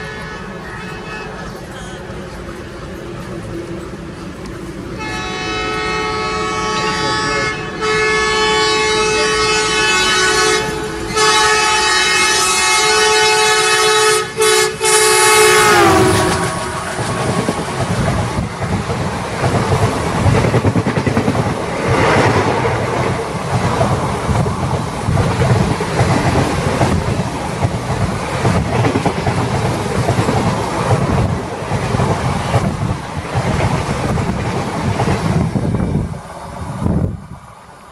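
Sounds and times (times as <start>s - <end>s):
express train rushing by: 0.0s - 37.9s
wheels clattering over rail joints: 16.0s - 35.6s.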